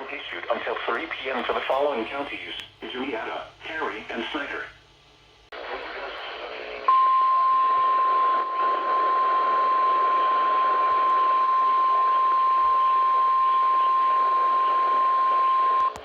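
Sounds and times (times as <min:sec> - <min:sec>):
radio receiver hiss: 0:00.0 - 0:07.0
steady alarm tone: 0:06.9 - 0:16.0.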